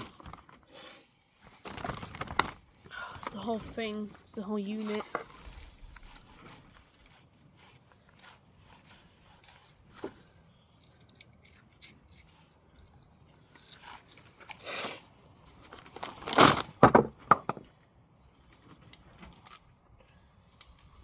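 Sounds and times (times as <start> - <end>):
plastic rasping crunch: 1.4 - 4.0, 15.4 - 17.7
plastic cracking and snapping: 1.6 - 3.4
plastic clicks and scrapes: 4.8 - 7.1.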